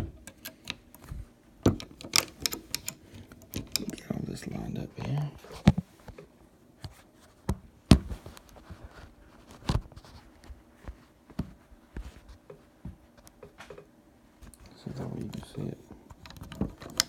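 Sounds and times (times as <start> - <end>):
rifle parts clicking and tapping: 0.2 - 4.0.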